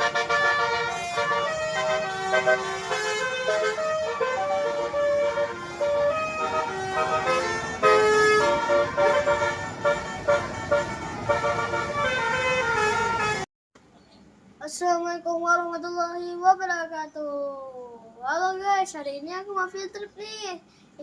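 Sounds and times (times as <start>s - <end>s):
bus musical horns playing tune: 0.0s - 13.5s
bus rumbling: 0.0s - 13.5s.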